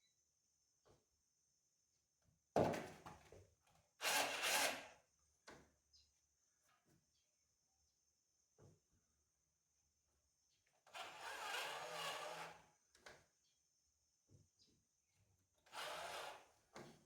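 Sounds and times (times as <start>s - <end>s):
electric drill boring through sheet metal: 10.9s - 12.6s, 15.7s - 16.4s.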